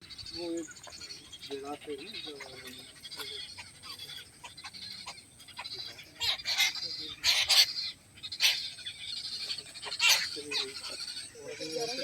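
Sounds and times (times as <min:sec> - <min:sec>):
birds squawking harshly: 0:00.0 - 0:12.0
faint bird chirping: 0:00.0 - 0:12.0.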